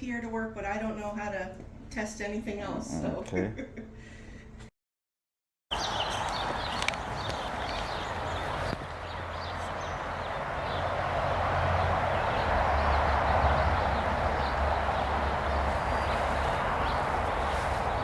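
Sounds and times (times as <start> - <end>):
dense rushing hiss: 7.4 - 18.0.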